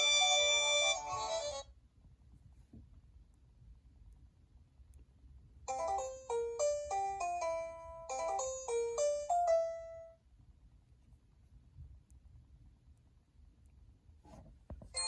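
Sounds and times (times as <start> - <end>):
electronic ringtone melody: 0.0 - 1.6, 5.7 - 10.1.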